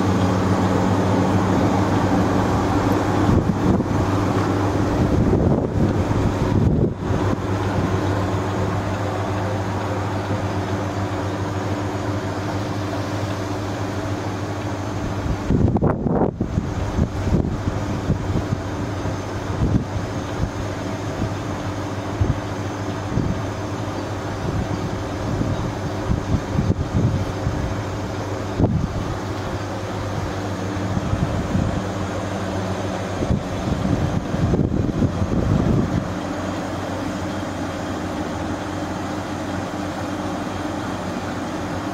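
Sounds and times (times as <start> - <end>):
rushing airy noise: 0.0 - 20.0
mechanical hum droning: 0.0 - 41.9
wind noise on microphone: 0.4 - 8.8, 14.9 - 36.3.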